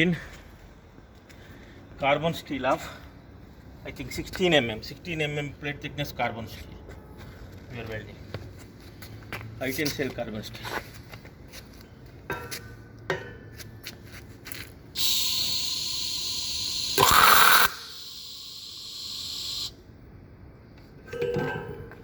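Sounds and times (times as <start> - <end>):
welding arc firing: 15.0 - 19.7
shielding gas hissing: 15.0 - 19.8.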